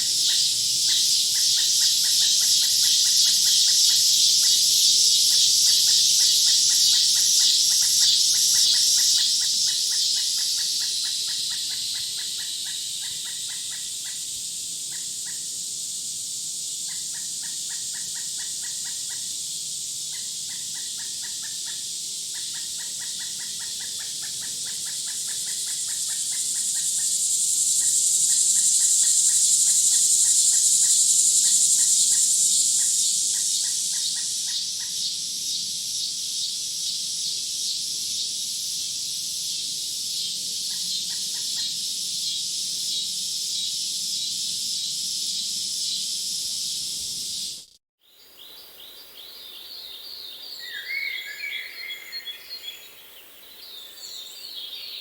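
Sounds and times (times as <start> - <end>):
high-pitched pulsing chirp chorus: 0.0 - 14.3
bird chirps: 48.5 - 53.0.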